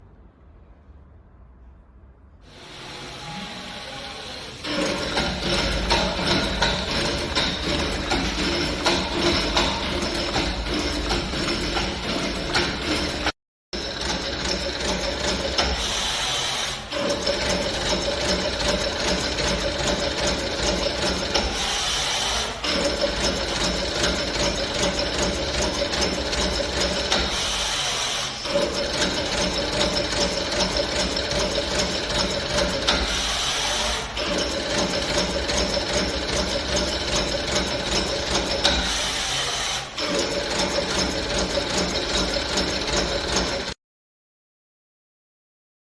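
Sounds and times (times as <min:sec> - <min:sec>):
machine hissing: 0:02.5 - 0:13.2, 0:15.2 - 0:18.4, 0:26.7 - 0:40.6
tufting machine clatter: 0:04.3 - 0:16.1, 0:16.9 - 0:43.8.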